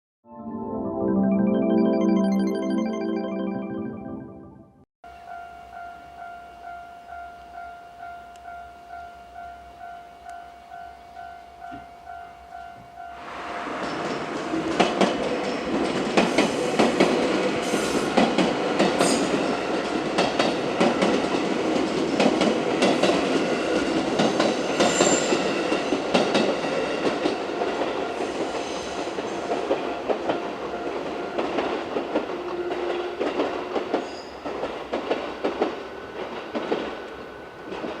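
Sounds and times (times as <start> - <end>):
level crossing bell ringing: 0.4 - 4.6
electric train passing: 5.2 - 38.0
wheels clicking over rail joints: 29.7 - 38.0.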